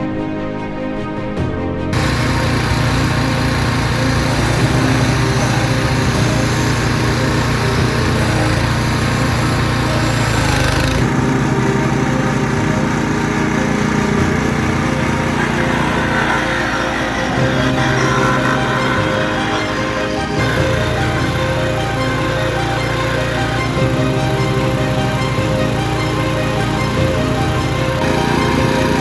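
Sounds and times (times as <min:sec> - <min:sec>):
hissing grind: 0:02.0 - 0:29.0
motor drone: 0:02.0 - 0:29.0.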